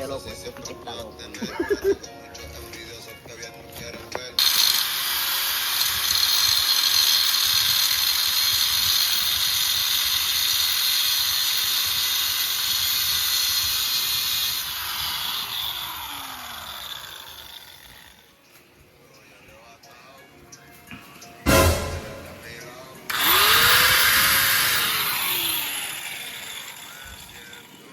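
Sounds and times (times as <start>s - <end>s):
angle grinder cutting steel: 4.4s - 18.3s, 21.5s - 27.9s.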